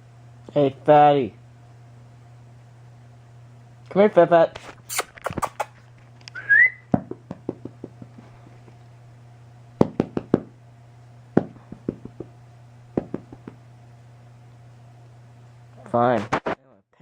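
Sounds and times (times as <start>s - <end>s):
tongue clicks: 4.9s - 6.8s
short rising whistle: 6.4s - 6.9s.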